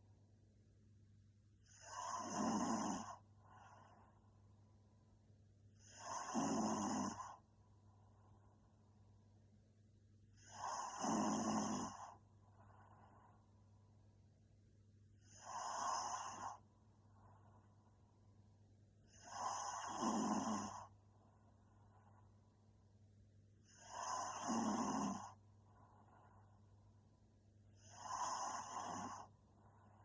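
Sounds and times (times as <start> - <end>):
soft breaths: 1.5 - 9.3, 10.3 - 30.0
woman snoring: 1.6 - 4.2, 5.8 - 7.4, 10.3 - 13.4, 15.2 - 16.6, 19.0 - 20.9, 23.6 - 26.3, 27.7 - 30.0
steady low hum: 16.5 - 19.2, 28.4 - 30.0.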